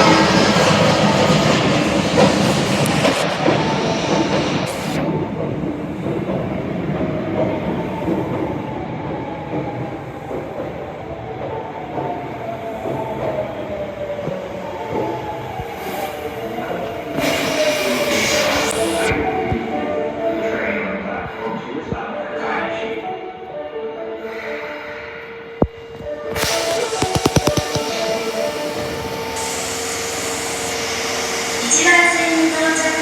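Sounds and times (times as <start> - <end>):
subway train running: 0.0 - 33.0.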